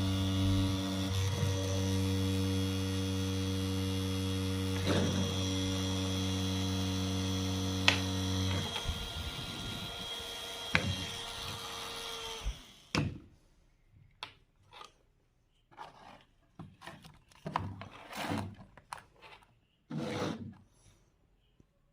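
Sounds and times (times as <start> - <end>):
mini fan motor hum and whine: 0.0 - 12.9.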